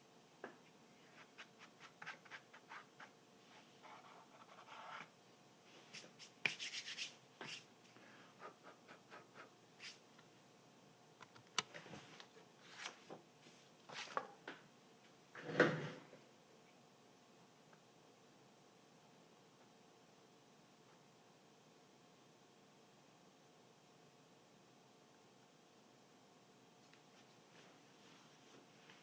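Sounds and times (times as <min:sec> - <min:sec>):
rubbing and scratching: 0:01.0 - 0:05.1, 0:05.8 - 0:07.7.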